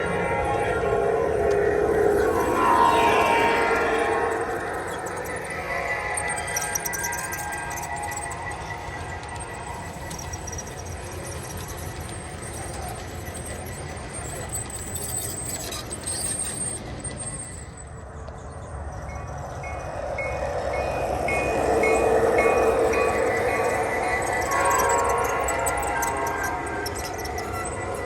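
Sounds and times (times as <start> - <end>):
bell ringing: 0.0 - 10.2, 19.3 - 28.0
train rumbling on rails: 0.0 - 28.0.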